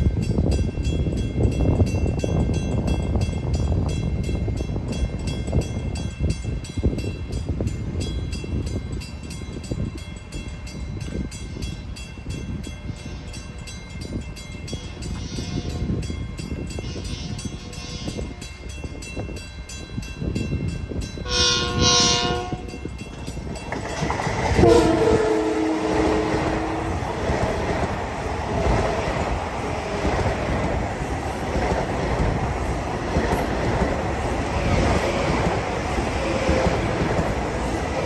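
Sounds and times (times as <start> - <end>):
train rumble: 0.0 - 38.0
train horn blasts: 15.1 - 16.1, 16.8 - 18.4, 21.2 - 22.8, 24.5 - 27.6.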